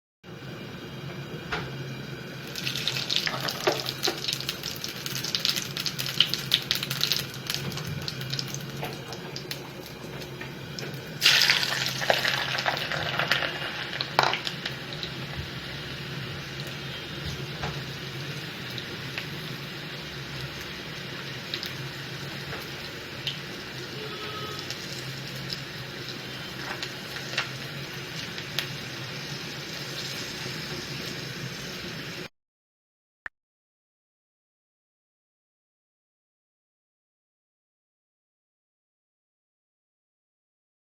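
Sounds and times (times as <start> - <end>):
oil sizzling and crackling in a pan: 0.4 - 32.3.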